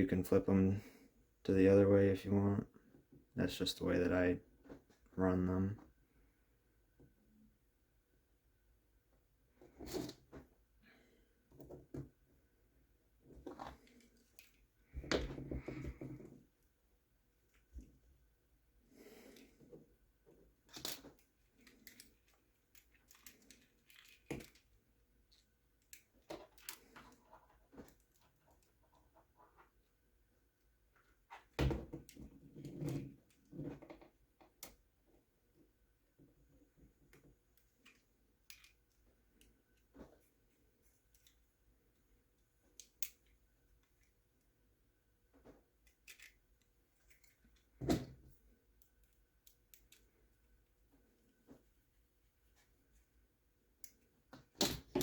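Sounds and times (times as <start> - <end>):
plastic parts clicking and rustling: 13.3 - 16.2, 20.6 - 29.8, 37.1 - 41.4, 45.3 - 47.8, 48.7 - 50.3.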